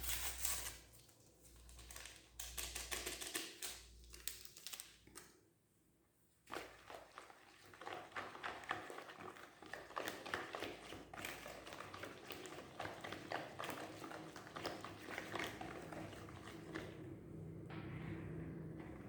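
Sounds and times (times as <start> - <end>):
utensil tapping mixing bowl: 7.8 - 19.0.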